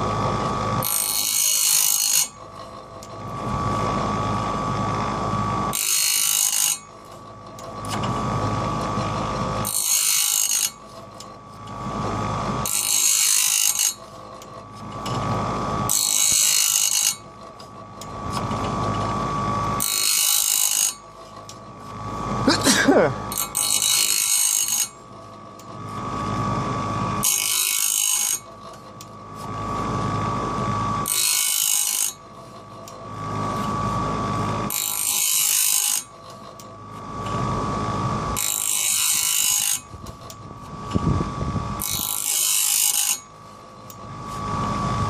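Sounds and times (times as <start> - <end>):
grinding wheel whining: 0.0 - 45.0.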